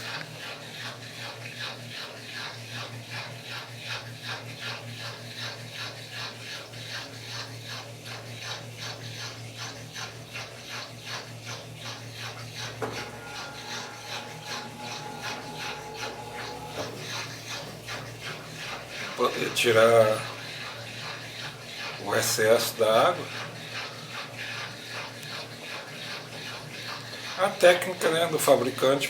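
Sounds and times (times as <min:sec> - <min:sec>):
washing machine drum ticking: 0:08.1 - 0:25.3
low hum: 0:12.5 - 0:19.5
high-pitched whine: 0:12.6 - 0:19.6.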